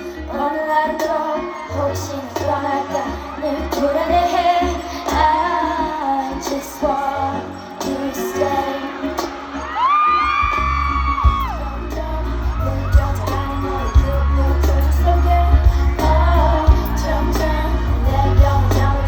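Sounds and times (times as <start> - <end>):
pop song with singing: 0.0 - 19.0
heavy bass beat: 10.5 - 19.0.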